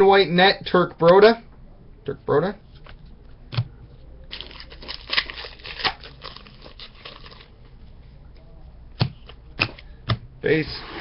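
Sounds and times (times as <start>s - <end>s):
foil wrapper tearing and crinkling: 4.3s - 7.5s.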